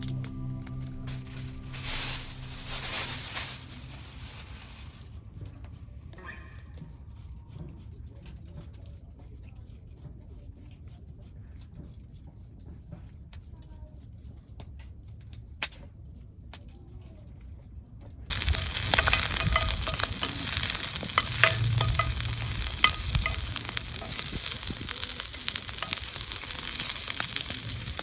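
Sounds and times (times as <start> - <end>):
food sizzling on hot surface: 0.0 - 5.1, 18.3 - 28.0.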